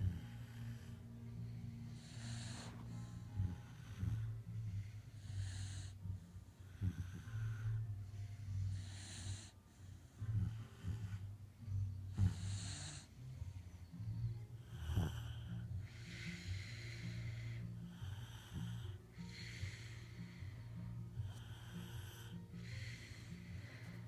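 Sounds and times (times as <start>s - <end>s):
hissy breath: 0.0s - 6.1s, 14.9s - 24.0s
person snoring: 12.1s - 13.1s, 14.6s - 20.5s.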